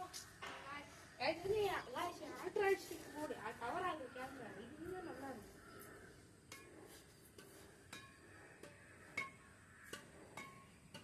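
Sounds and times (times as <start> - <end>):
shuttlecock struck by rackets: 7.4 - 11.0.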